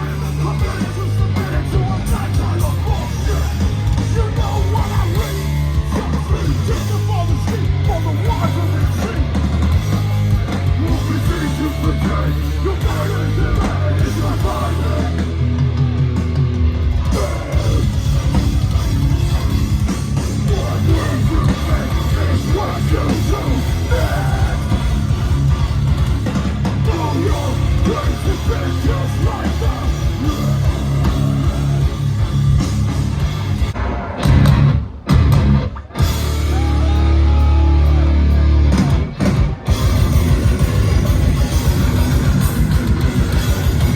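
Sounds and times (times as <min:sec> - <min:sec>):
heavy band playing live: 0:00.0 - 0:43.9.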